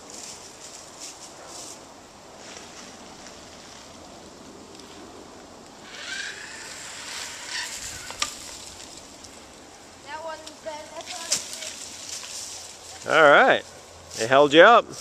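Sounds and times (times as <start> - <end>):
zip line trolley whirring: 5.6 - 9.6.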